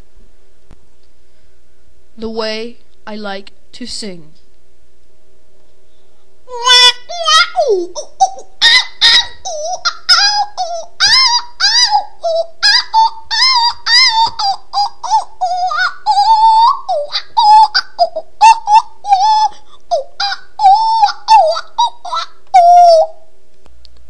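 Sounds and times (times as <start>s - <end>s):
child singing in squeaky voice: 6.5s - 23.2s.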